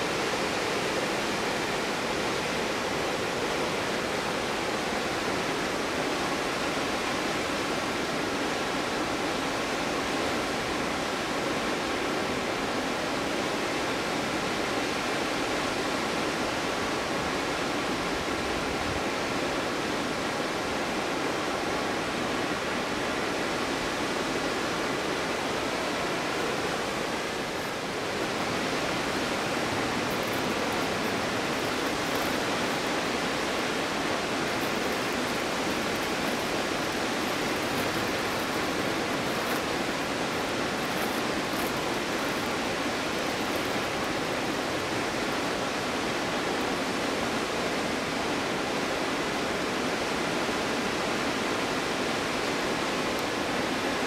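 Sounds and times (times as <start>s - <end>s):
waterfall rushing: 19.9s - 50.7s.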